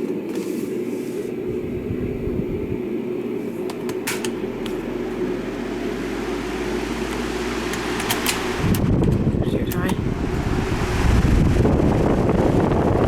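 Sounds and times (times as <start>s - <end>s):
table fan running: 0.0s - 13.0s
sharp clicks: 7.1s - 10.0s.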